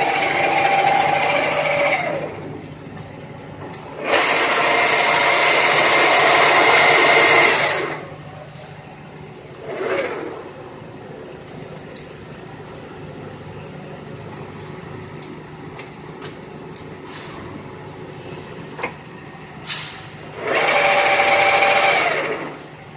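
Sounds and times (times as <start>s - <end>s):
lathe running: 0.0s - 2.5s, 3.9s - 8.2s, 20.3s - 22.6s.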